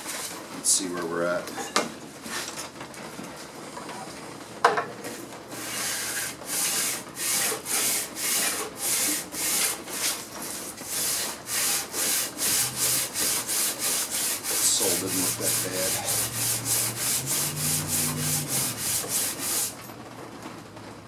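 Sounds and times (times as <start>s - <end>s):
plane rasping on sandpaper: 5.6s - 19.8s.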